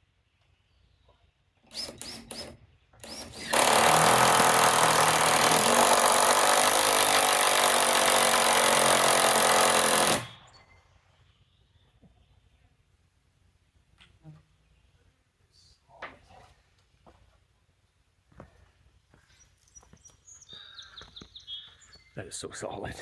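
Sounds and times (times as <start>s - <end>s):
impact driver hammering: 3.1s - 10.4s.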